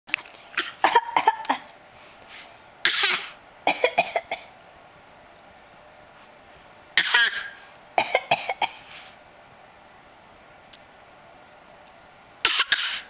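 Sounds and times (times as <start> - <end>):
person coughing: 0.6 - 1.7, 2.9 - 4.5, 7.0 - 8.8, 12.5 - 13.0.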